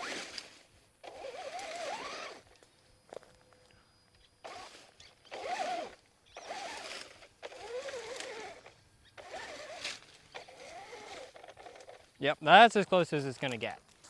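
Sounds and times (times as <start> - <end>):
toy truck electric motor whining: 0.0 - 2.5, 4.4 - 12.1.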